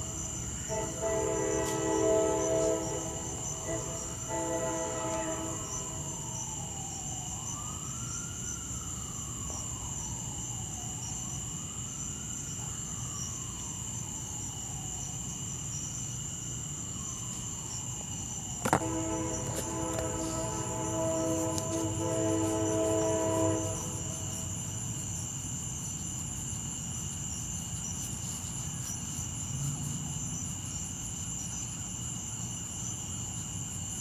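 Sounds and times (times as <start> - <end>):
steady chord of tones: 0.0 - 6.2, 18.8 - 24.6
siren wailing: 0.0 - 11.7, 18.6 - 24.6.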